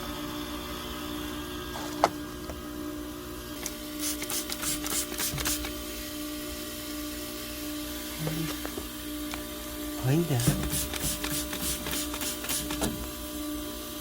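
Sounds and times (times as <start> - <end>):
short hissing sprays: 3.9 - 5.8, 10.2 - 13.2.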